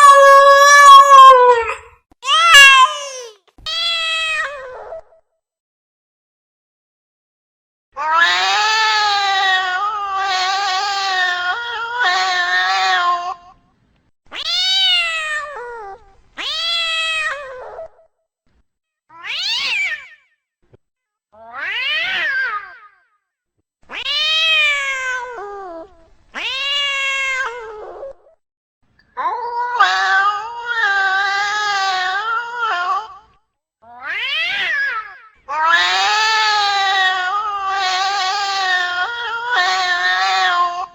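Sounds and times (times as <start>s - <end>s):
cat meowing: 0.0s - 5.0s, 8.0s - 13.5s, 14.3s - 17.6s, 19.1s - 20.2s, 21.4s - 22.9s, 23.9s - 28.0s, 29.2s - 33.3s, 33.9s - 40.9s.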